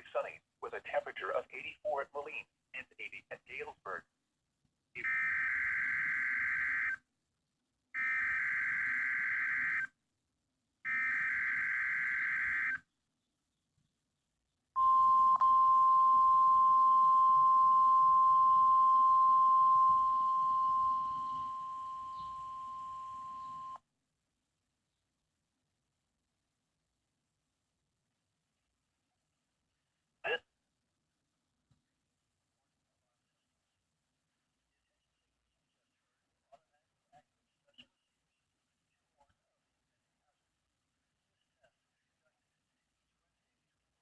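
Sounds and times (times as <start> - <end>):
steady warning alarm tone: 5.0 - 7.0, 8.0 - 9.9, 10.9 - 12.8, 14.8 - 23.8.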